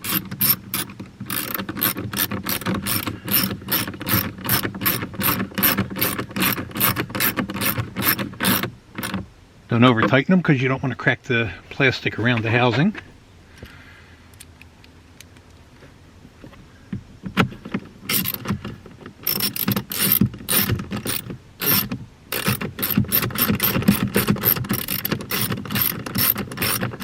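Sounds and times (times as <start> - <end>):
ratchet wrench clicking: 0.0 - 9.2, 18.1 - 18.6, 19.2 - 27.0.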